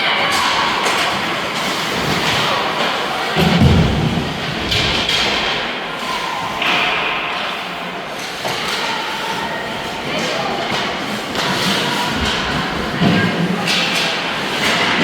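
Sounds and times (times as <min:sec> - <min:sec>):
dull thud: 0:03.4 - 0:05.6.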